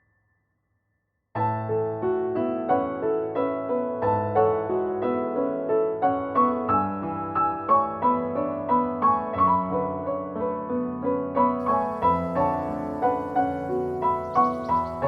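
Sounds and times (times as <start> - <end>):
gentle piano melody: 1.4 - 15.0.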